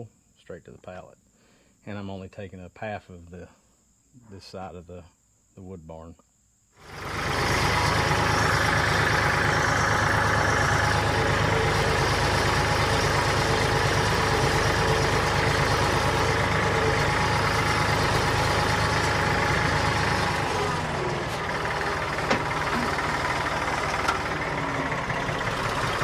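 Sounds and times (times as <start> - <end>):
tractor engine running: 6.8 - 26.0.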